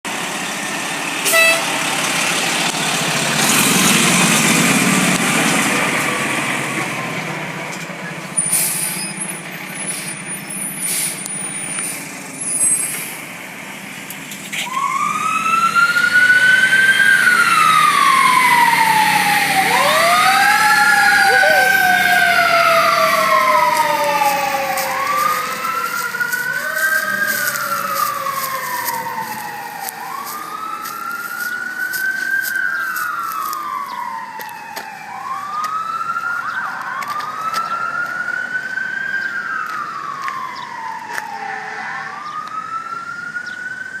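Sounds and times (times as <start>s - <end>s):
fire truck siren wailing: 0.2s - 12.8s, 14.4s - 44.0s
mechanical siren winding down: 14.6s - 31.2s.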